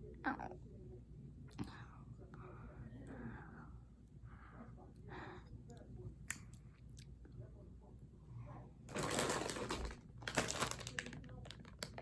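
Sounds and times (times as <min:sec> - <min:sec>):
plastic wrapper crinkling: 0:08.9 - 0:12.0.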